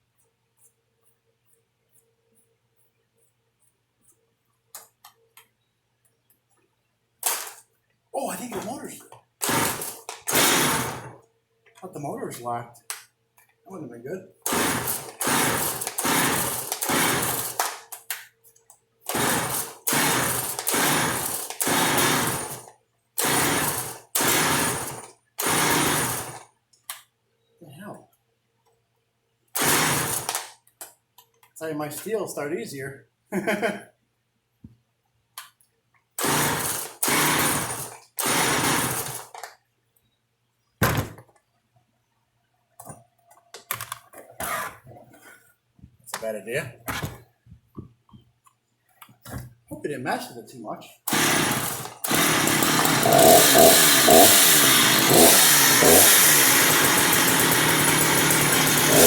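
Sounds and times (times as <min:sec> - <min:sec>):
chainsaw engine turning over: 0:07.2 - 0:07.6, 0:08.2 - 0:11.2, 0:14.4 - 0:17.9, 0:19.1 - 0:26.4, 0:29.6 - 0:30.5, 0:36.2 - 0:39.5, 0:51.1 - 0:59.0
chainsaw recoil starter pulled: 0:07.2 - 0:07.6, 0:09.4 - 0:11.2, 0:14.4 - 0:18.0, 0:19.1 - 0:26.4, 0:29.6 - 0:30.5, 0:36.2 - 0:39.5, 0:44.4 - 0:44.8, 0:51.1 - 0:59.0.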